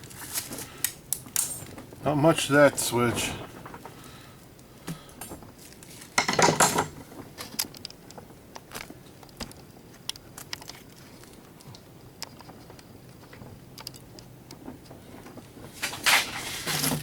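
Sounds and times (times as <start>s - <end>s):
small metal parts clattering: 1.4s - 1.8s, 5.2s - 7.0s.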